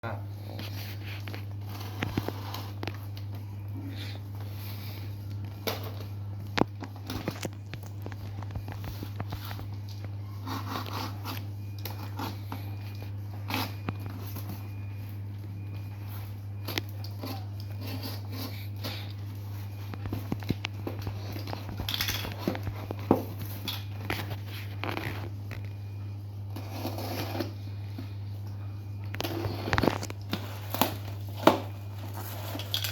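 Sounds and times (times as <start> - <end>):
steady low hum: 0.0 - 32.9
objects being handled: 28.6 - 32.9.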